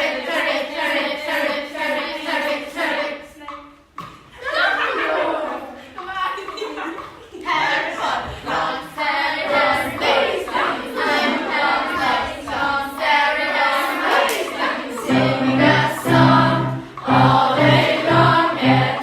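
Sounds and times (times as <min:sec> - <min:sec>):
group of voices singing: 0:00.0 - 0:03.7, 0:07.4 - 0:19.0
pulsing low notes: 0:15.1 - 0:19.0.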